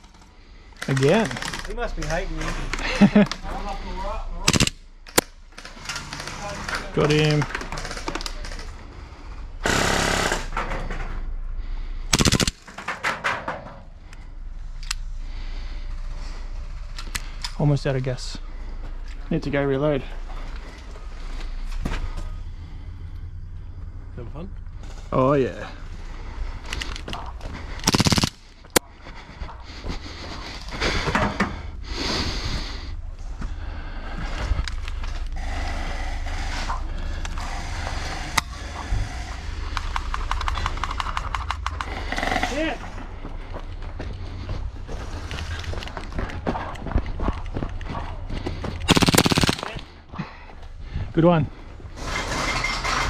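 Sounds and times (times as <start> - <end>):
gel blaster pistol firing: 4.5 - 4.8, 48.9 - 49.8.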